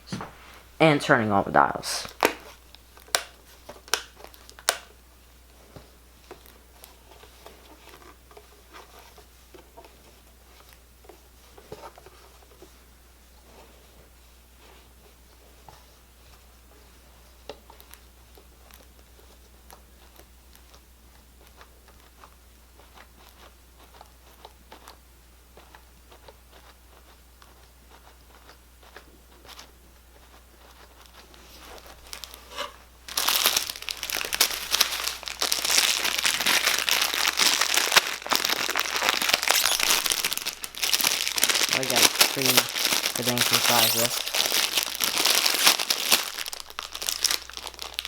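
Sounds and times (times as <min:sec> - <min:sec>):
packaging crinkling and rustling: 0:02.0 - 0:04.9, 0:31.4 - 0:48.0.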